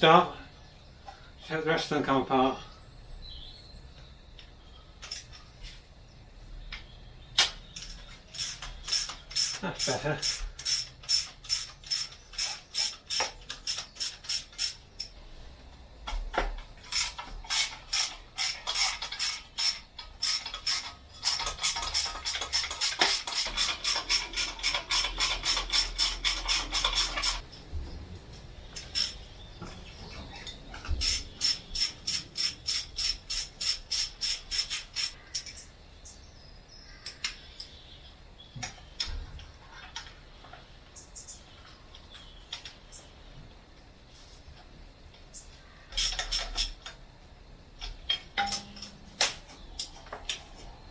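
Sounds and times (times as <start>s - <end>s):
socket wrench ratchet clicking: 7.4s - 15.1s, 16.9s - 27.4s, 28.8s - 29.2s, 31.0s - 35.6s, 45.9s - 47.0s.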